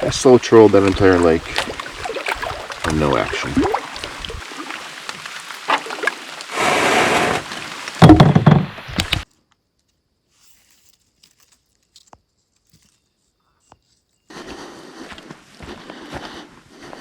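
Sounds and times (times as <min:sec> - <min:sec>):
hollow thunks and knocks: 0:08.0 - 0:09.2.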